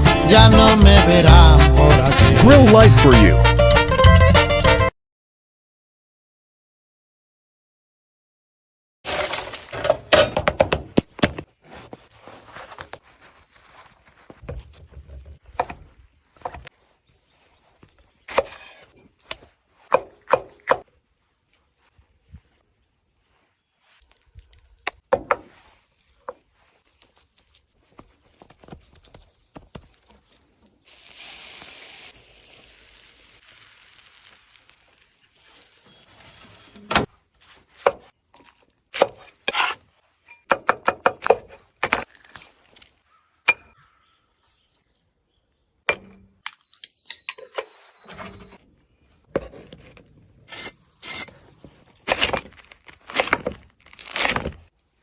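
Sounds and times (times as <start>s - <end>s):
steady hiss: 30.9s - 36.7s.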